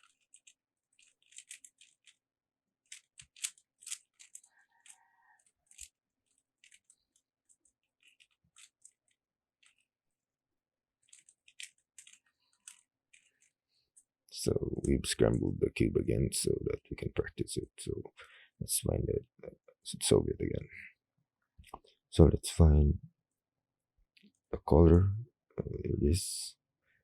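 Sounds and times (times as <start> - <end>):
plastic puzzle cube clicking: 0.0 - 2.2, 2.8 - 9.9, 11.0 - 14.0.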